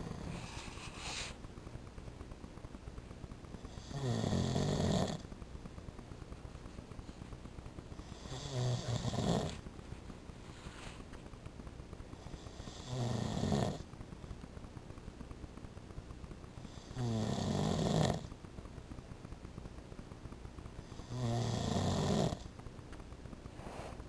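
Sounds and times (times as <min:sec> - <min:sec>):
man snoring: 0:03.8 - 0:05.2, 0:08.0 - 0:09.6, 0:12.5 - 0:13.8, 0:16.8 - 0:18.3, 0:21.0 - 0:22.5.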